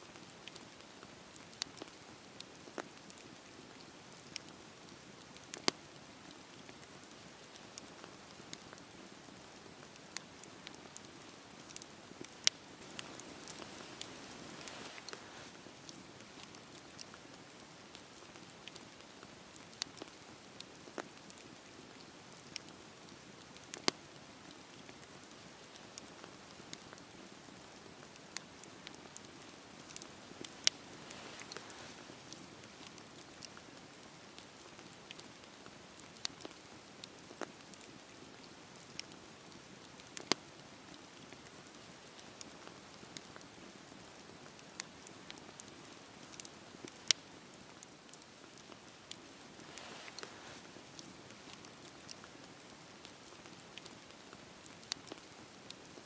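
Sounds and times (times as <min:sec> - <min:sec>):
campfire hissing: 0:00.1 - 0:40.4, 0:41.7 - 0:54.0
campfire pops: 0:05.5 - 0:05.8, 0:11.7 - 0:15.5, 0:28.5 - 0:32.3.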